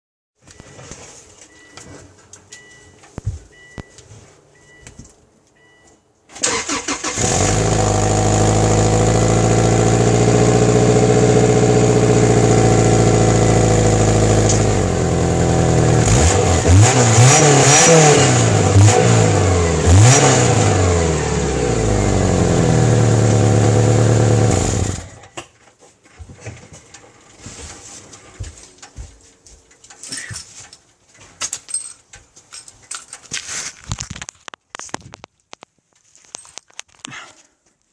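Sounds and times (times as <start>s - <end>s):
car engine idling and revving: 6.4s - 25.3s.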